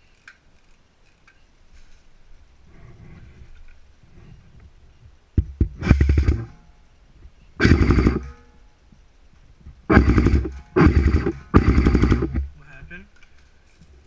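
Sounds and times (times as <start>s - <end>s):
airsoft rifle full-auto bursts: 5.8s - 6.5s, 7.6s - 8.4s, 9.9s - 12.5s.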